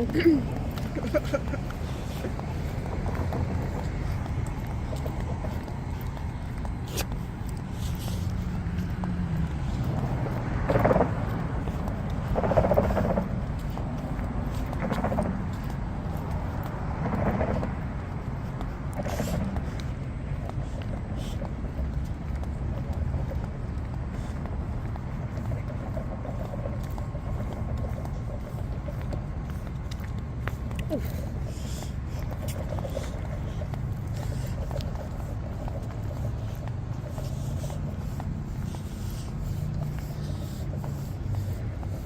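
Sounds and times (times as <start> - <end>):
low rumble of traffic: 0.0 - 42.0.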